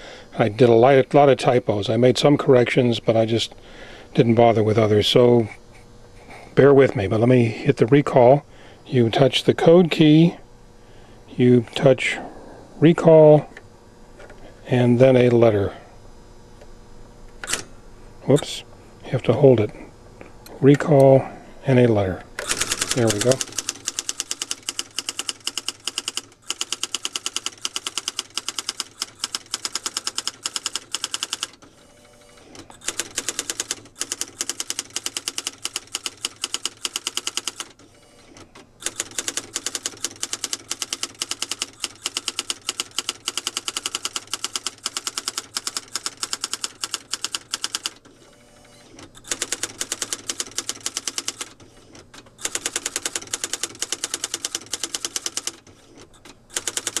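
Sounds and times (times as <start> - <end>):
electronic typewriter rapid strikes: 22.4 - 31.6, 32.8 - 37.8, 38.8 - 48.0, 49.2 - 51.6, 52.4 - 55.7, 56.5 - 57.0.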